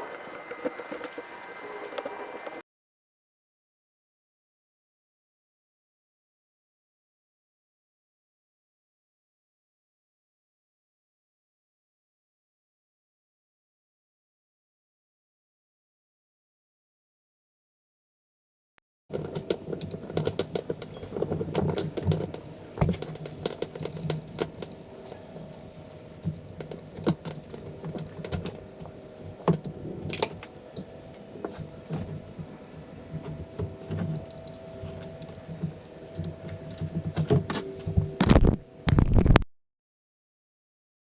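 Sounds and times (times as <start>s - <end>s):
metal tools and engine parts clinking: 19.1s - 38.2s.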